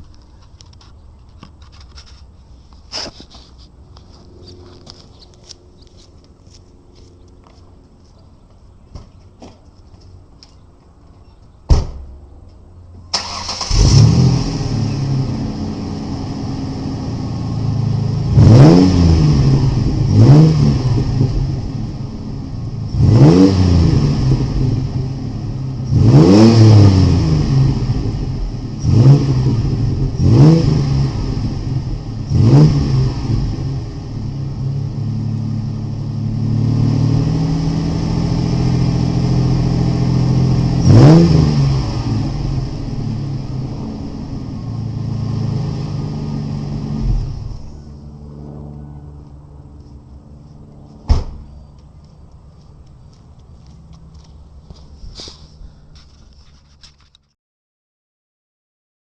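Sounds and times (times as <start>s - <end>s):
car engine starting and idling: 12.4s - 57.2s
car engine revving: 13.1s - 49.3s.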